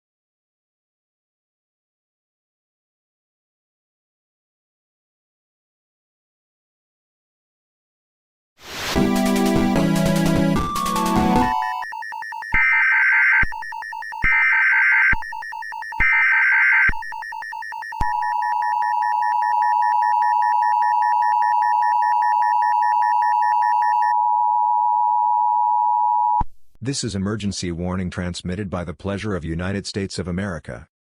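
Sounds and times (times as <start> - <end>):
rapid pulsing beep: 10.6 - 24.1
steady attention tone: 10.6 - 26.4.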